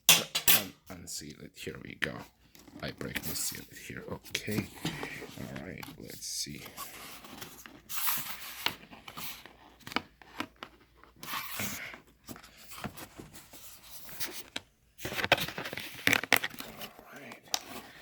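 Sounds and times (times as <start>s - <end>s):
packaging tearing and crinkling: 15.0s - 17.0s.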